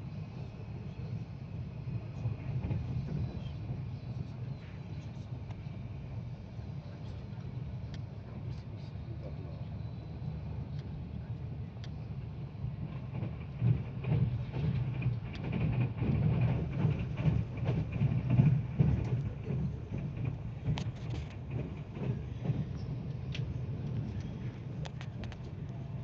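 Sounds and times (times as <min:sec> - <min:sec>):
electric train rumbling: 0:00.0 - 0:26.0
wheels knocking on rails: 0:13.1 - 0:25.5.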